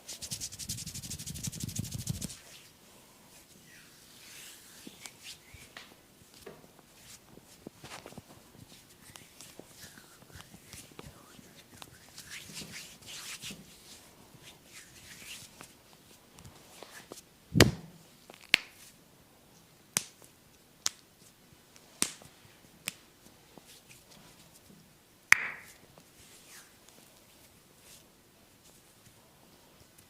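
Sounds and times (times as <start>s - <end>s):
hands rubbing oiled skin: 0.0s - 2.7s, 3.8s - 17.2s
sharp snaps: 22.0s - 23.0s, 25.3s - 25.8s.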